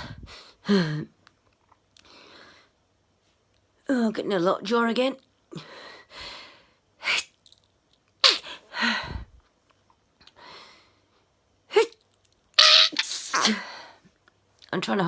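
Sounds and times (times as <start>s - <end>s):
woman sneezing: 12.6s - 13.8s.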